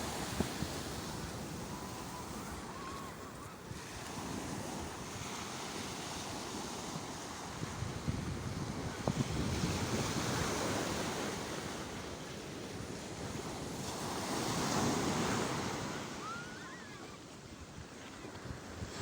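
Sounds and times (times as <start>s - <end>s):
sea waves washing onto shore: 0.0s - 19.0s
warbling whistle: 16.2s - 17.1s.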